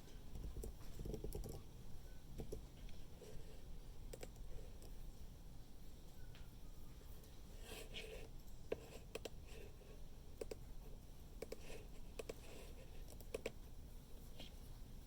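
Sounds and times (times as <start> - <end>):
faint room hum: 0.0 - 15.0
computer keys clicking: 0.3 - 1.6, 2.4 - 2.7, 4.1 - 5.0, 8.4 - 9.4, 10.4 - 10.6, 11.4 - 13.6.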